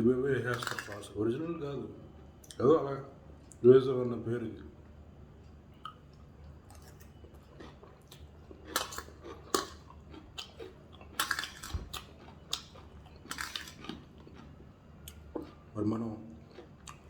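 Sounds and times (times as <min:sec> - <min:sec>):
person chewing with crunching: 0:00.5 - 0:01.0, 0:05.8 - 0:17.0.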